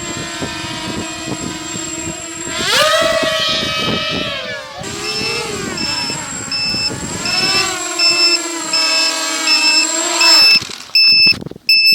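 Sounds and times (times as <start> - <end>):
quadcopter motors buzzing whine: 0.0 - 11.9
short electronic beep: 8.9 - 11.9.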